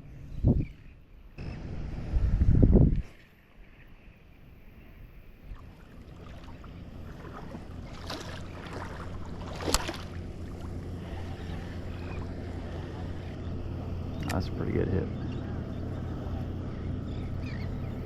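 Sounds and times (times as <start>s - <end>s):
distant boat engine humming: 0.0s - 18.0s
sharp clicks: 14.2s - 14.4s.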